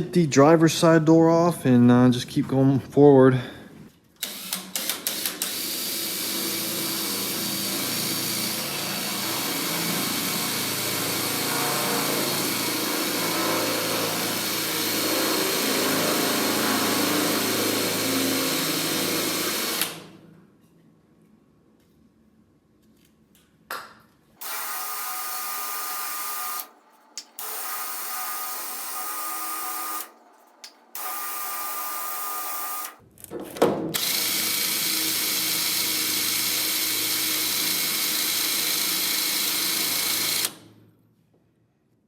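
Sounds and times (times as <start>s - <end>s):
power drill drilling metal: 4.2s - 20.2s, 24.4s - 30.2s, 31.0s - 33.0s, 34.0s - 40.7s.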